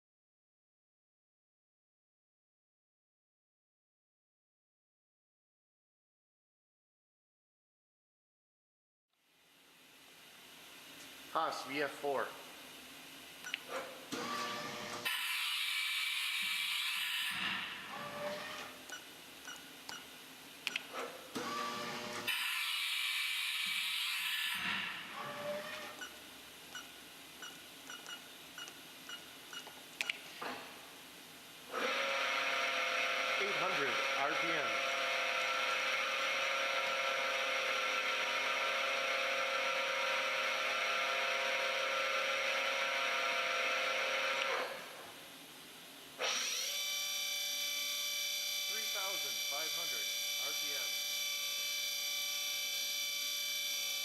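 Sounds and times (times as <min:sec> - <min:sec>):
mill mechanical clicks and whirs: 0:13.4 - 0:30.8, 0:31.7 - 0:45.1.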